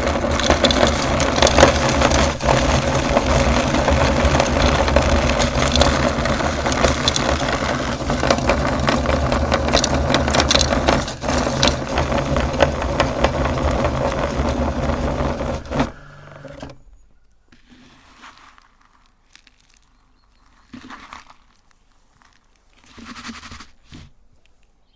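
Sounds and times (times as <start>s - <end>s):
meat grinder motor hum: 0.0s - 16.9s
faint rustling: 0.0s - 24.2s
crackling crunches: 0.0s - 24.8s.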